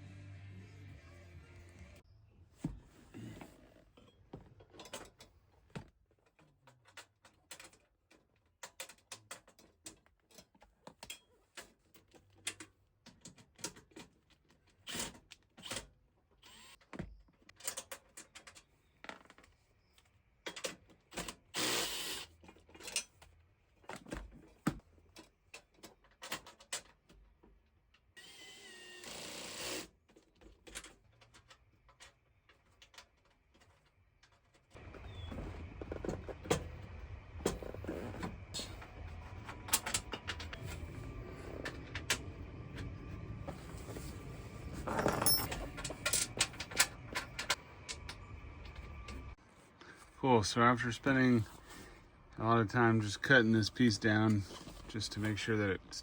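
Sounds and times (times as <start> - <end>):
wrenches clinking on metal: 44.7 - 47.6.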